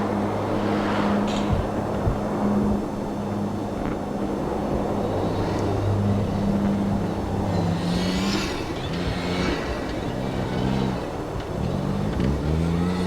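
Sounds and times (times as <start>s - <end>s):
rally car engine running hard: 0.0s - 13.0s
tyres rushing on snow: 4.1s - 13.0s.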